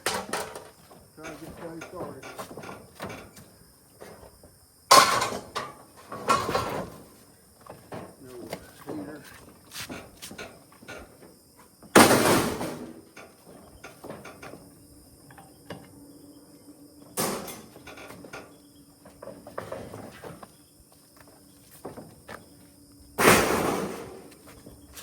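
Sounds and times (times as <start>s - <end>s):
metal knocks and clanks: 0.0s - 3.4s, 4.9s - 7.1s
scrap metal crashing down: 4.9s - 7.0s, 23.2s - 24.3s.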